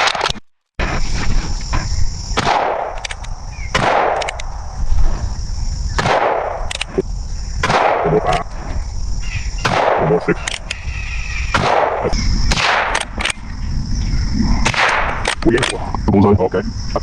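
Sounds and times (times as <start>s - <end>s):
gunshots with echo: 2.4s - 3.0s, 3.7s - 4.4s, 6.0s - 6.7s, 7.6s - 8.2s, 9.6s - 10.4s, 11.5s - 13.0s, 14.6s - 15.3s.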